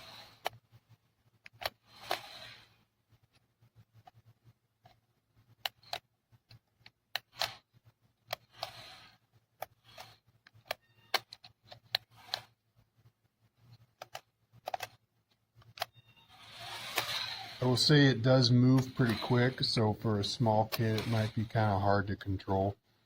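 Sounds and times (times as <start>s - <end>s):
small electric motor spurts: 0.0s - 0.5s, 1.6s - 2.8s, 8.4s - 10.2s, 12.0s - 12.6s, 16.2s - 17.9s, 18.8s - 19.6s, 20.7s - 21.6s.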